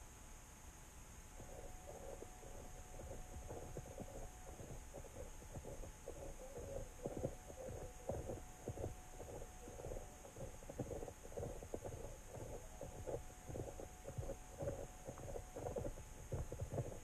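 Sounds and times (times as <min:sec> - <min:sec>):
underwater rumble and hum: 0:01.4 - 0:17.0.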